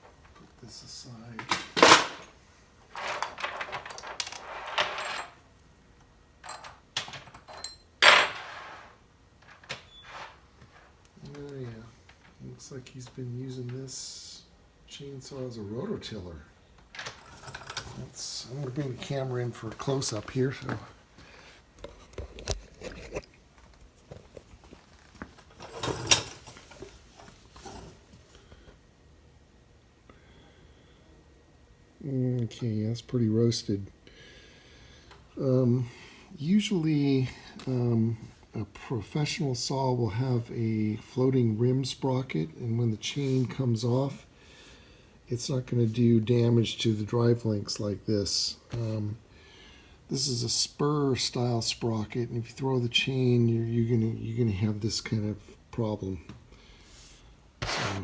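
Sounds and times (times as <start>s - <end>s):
rustling and scraping: 2.9s - 5.4s, 21.6s - 28.3s, 56.8s - 58.0s
metal tools clinking on workbench: 3.0s - 5.4s, 6.4s - 10.4s, 25.6s - 26.7s.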